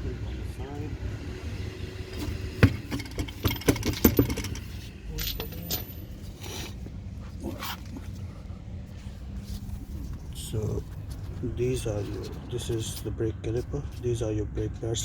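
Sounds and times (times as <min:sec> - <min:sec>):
wheel parts knocking and clattering: 0:02.1 - 0:07.0
steady low rumble: 0:04.2 - 0:15.0.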